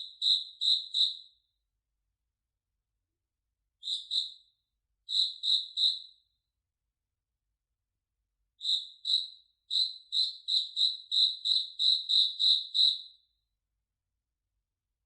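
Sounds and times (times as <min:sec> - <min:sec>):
cricket chirping: 0:05.1 - 0:06.0, 0:08.6 - 0:13.0.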